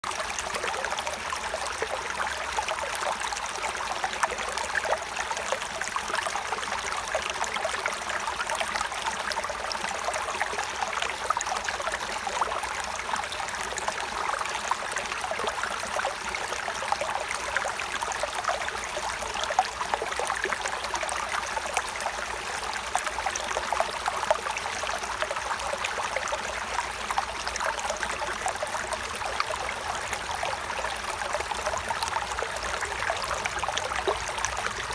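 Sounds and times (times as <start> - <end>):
stream of running water: 0.0 - 34.9.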